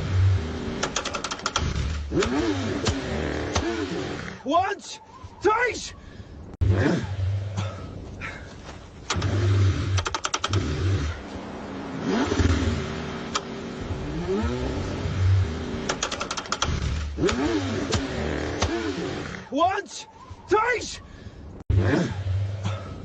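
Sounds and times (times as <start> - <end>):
car engine cranking: 0.0 - 4.5, 9.0 - 19.5
rapid clicking: 0.8 - 3.0, 9.9 - 10.7, 15.8 - 18.7.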